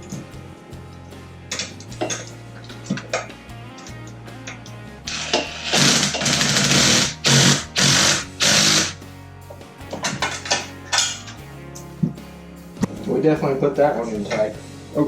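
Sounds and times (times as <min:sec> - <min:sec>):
background music: 0:00.0 - 0:15.0
cordless drill driving bolt: 0:05.1 - 0:09.0.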